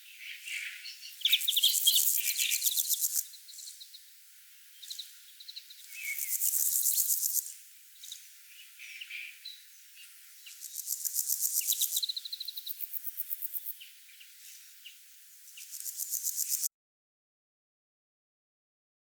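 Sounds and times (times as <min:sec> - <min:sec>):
cricket trilling: 0:01.0 - 0:03.4, 0:04.8 - 0:08.2, 0:10.4 - 0:13.9, 0:15.5 - 0:16.7.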